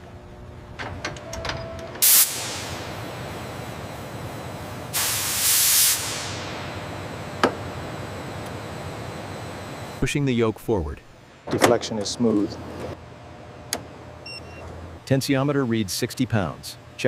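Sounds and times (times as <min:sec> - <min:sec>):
compressed air blasts: 0:02.0 - 0:03.0, 0:04.9 - 0:06.7
steady background hiss: 0:02.0 - 0:13.0.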